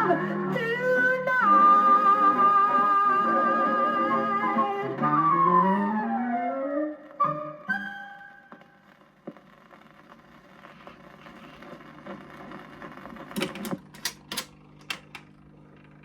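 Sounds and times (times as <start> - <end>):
record surface noise: 8.5 - 16.0
record player mechanical clicks: 10.8 - 16.0.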